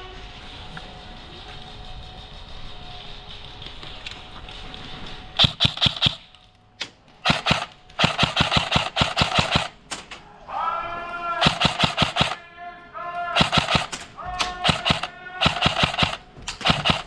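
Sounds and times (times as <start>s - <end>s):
airsoft gun shots: 5.4s - 6.3s, 7.2s - 9.8s, 11.4s - 12.4s, 13.4s - 17.0s.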